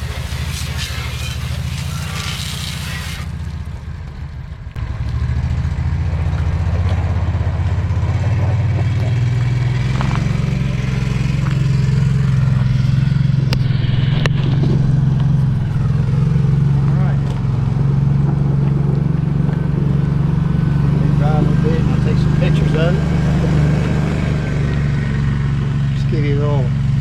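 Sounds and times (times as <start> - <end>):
hissing water spray: 0.0 - 4.0
engine running: 0.0 - 27.0.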